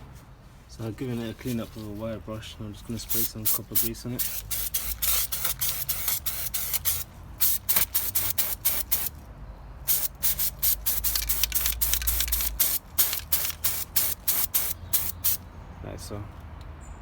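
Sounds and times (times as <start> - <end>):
aerosol spray hissing: 3.1 - 9.2, 9.9 - 15.4.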